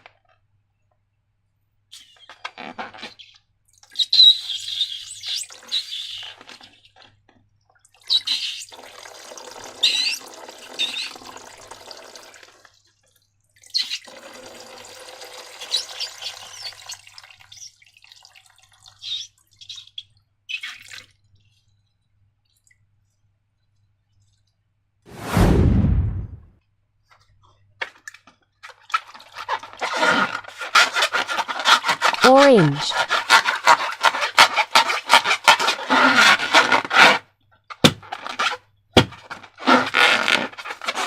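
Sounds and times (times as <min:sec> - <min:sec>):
sticky squeaks: 0:04.0 - 0:06.9.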